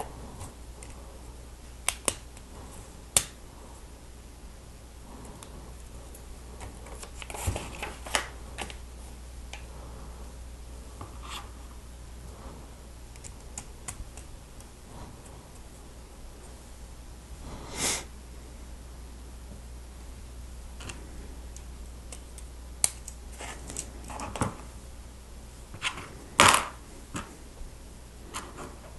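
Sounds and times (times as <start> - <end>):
low hum: 0.0 - 28.9
rustling scrape: 11.1 - 11.7.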